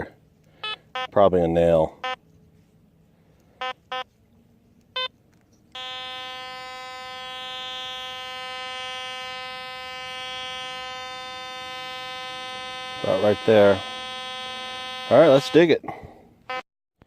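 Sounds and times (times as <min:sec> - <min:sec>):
metal detector beeps: 0:00.6 - 0:01.2, 0:02.0 - 0:02.2, 0:03.6 - 0:04.1, 0:04.9 - 0:05.1, 0:05.7 - 0:15.6
metal detector steady tone: 0:00.6 - 0:02.3, 0:03.6 - 0:04.1, 0:04.8 - 0:15.7.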